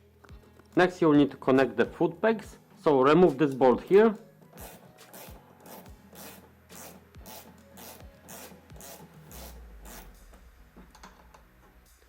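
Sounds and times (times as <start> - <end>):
ratchet wrench rasping: 4.6 - 10.2.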